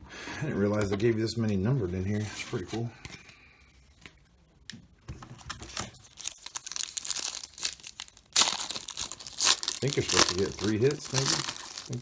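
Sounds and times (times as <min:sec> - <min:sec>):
wrapper tearing and crinkling: 0:05.7 - 0:12.0.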